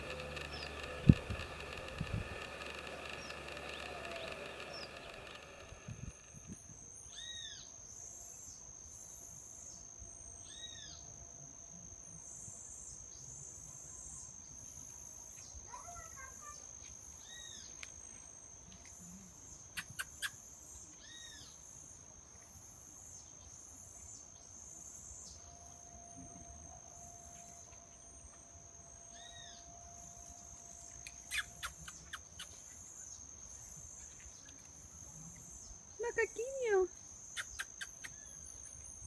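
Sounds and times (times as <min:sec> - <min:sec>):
sharp clicks: 0:00.0 - 0:06.6
insects droning: 0:00.0 - 0:09.8, 0:10.4 - 0:39.0.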